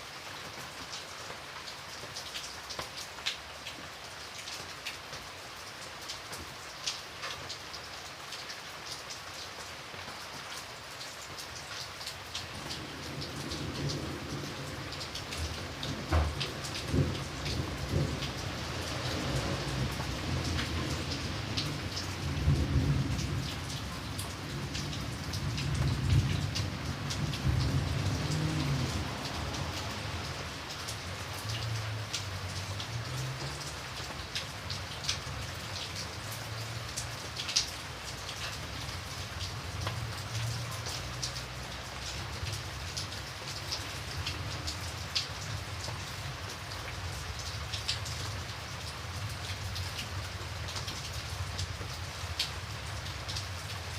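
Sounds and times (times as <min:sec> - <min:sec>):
raindrops ticking close by: 0:00.0 - 0:53.9
steady rain falling: 0:00.0 - 0:53.9
low rumble of thunder: 0:12.6 - 0:30.6.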